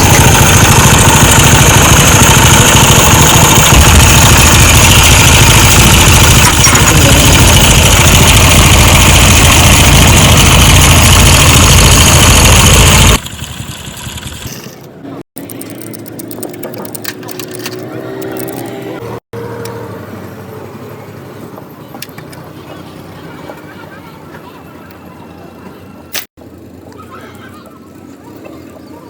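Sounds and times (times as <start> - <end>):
vehicle engine idling: 0.0 - 16.5.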